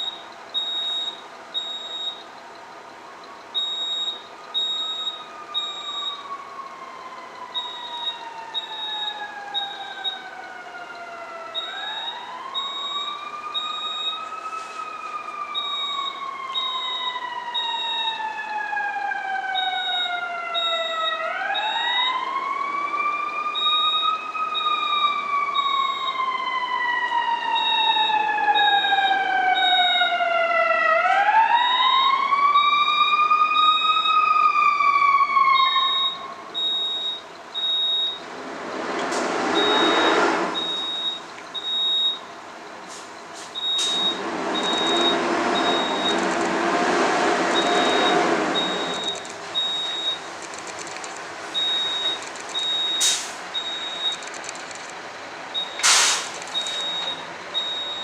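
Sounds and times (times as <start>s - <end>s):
fire alarm beeping: 0.0s - 2.4s, 3.5s - 6.8s, 7.5s - 10.3s, 11.0s - 14.7s, 15.5s - 18.3s, 19.6s - 22.2s, 23.5s - 26.3s, 27.5s - 30.1s, 35.6s - 38.2s, 40.6s - 42.3s, 43.6s - 46.2s, 47.6s - 50.3s, 51.6s - 54.2s, 55.5s - 58.0s
emergency siren wailing: 1.4s - 54.6s, 55.3s - 58.0s
loud bursts of rushing noise: 38.2s - 41.1s, 43.5s - 49.2s, 55.8s - 56.6s.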